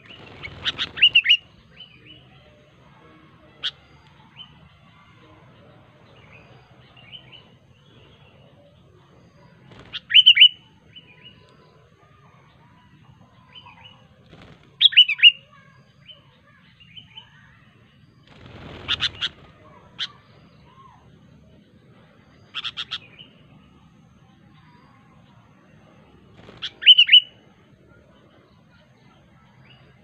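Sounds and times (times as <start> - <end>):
bird calling sharp notes: 26.6 - 27.3.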